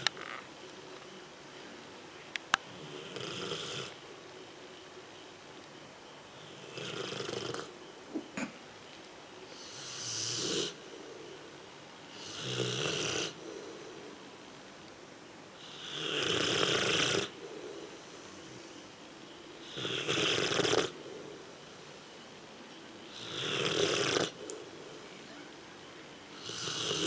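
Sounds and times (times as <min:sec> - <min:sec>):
dog snoring: 0:02.7 - 0:04.0, 0:06.4 - 0:07.8, 0:09.6 - 0:10.9, 0:12.1 - 0:13.5, 0:15.6 - 0:18.6, 0:19.6 - 0:21.0, 0:23.1 - 0:24.6, 0:26.4 - 0:27.0.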